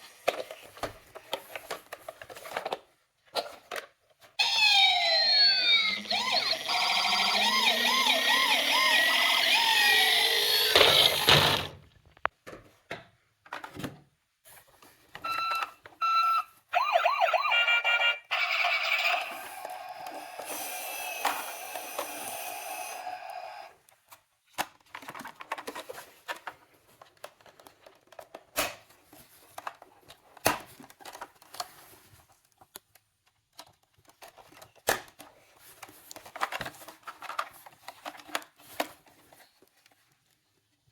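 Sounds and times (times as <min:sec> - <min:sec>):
electronic toy sirens wailing: 0:04.4 - 0:11.3, 0:15.3 - 0:23.7.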